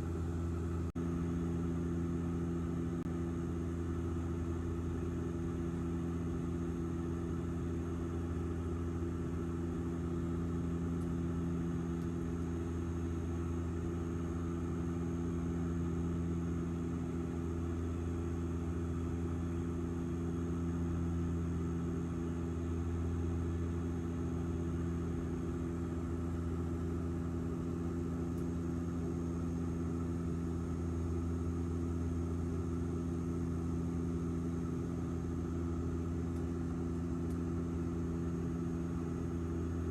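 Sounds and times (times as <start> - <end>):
airliner engine drone in cabin: 0.0 - 39.9.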